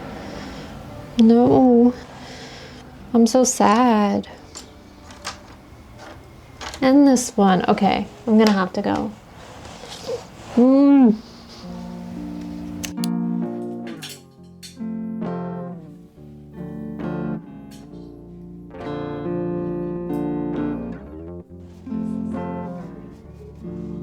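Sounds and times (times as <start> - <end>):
plucked acoustic guitar: 11.2 - 24.0.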